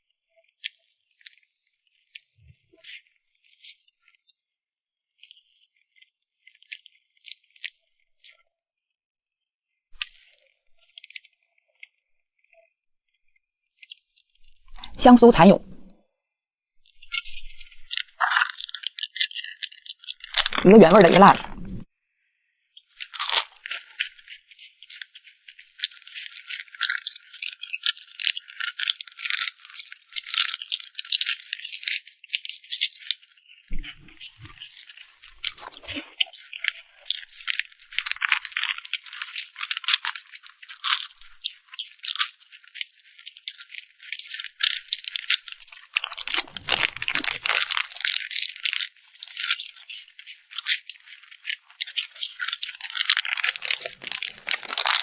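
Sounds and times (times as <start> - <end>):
crunchy food being chewed: 0.4 - 4.4, 5.1 - 8.5, 10.0 - 12.7, 13.7 - 15.9, 16.8 - 21.9, 22.7 - 55.0.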